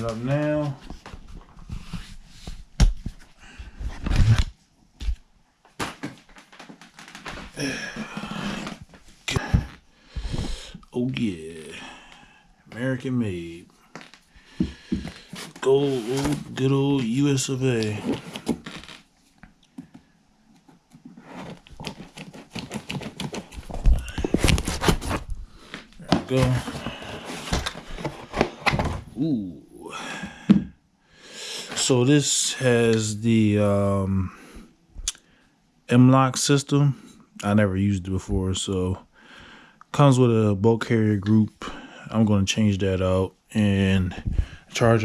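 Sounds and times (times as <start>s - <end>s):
heavy thumps: 14.4s - 16.6s
cardboard box rustling: 17.8s - 19.0s, 21.1s - 29.1s
packaging scraping: 21.2s - 28.8s.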